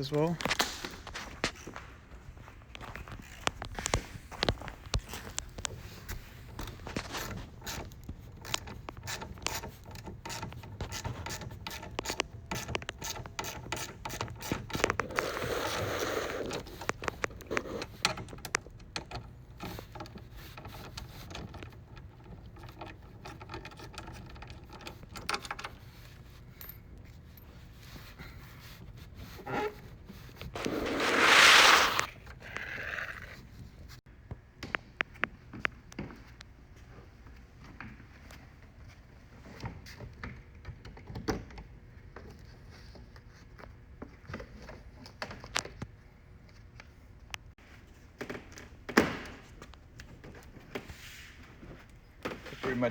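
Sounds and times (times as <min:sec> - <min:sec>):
loud scraping rush: 0:30.6 - 0:32.1.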